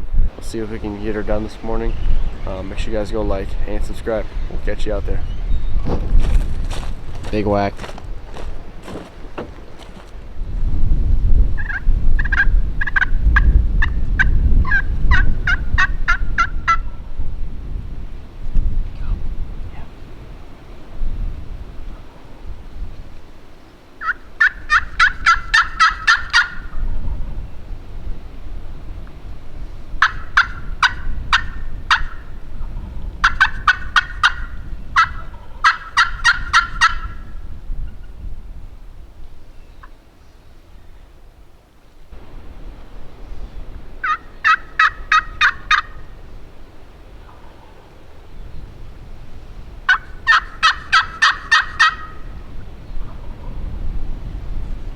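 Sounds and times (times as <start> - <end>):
wind buffeting microphone: 0.0 - 54.9
turkey gobbling: 11.6 - 17.0, 24.0 - 27.0, 30.0 - 38.1, 44.0 - 46.2, 47.2 - 48.0, 49.9 - 52.3.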